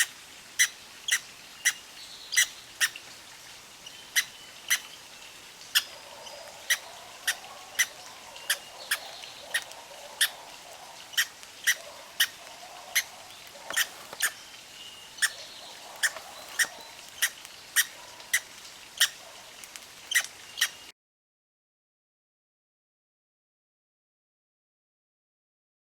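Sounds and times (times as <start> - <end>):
faint bird calls: 3.9 - 5.0, 5.7 - 19.5
squirrel sharp clicks: 11.2 - 14.3.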